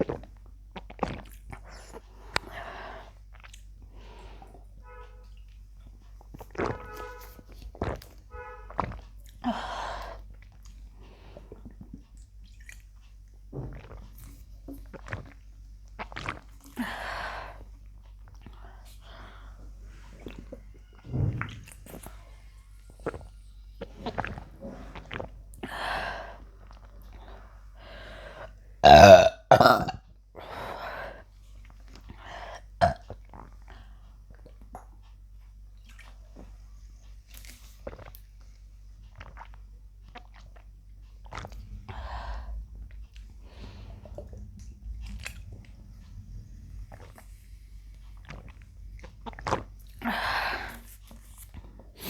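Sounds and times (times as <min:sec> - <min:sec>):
woman gulping and swallowing: 0:00.0 - 0:03.9, 0:06.1 - 0:18.6, 0:23.0 - 0:27.2, 0:28.8 - 0:30.2, 0:31.6 - 0:35.1, 0:37.4 - 0:47.3, 0:47.9 - 0:52.0
loud low burp: 0:28.8 - 0:30.0, 0:32.8 - 0:33.0
breathy exhales: 0:41.5 - 0:48.1.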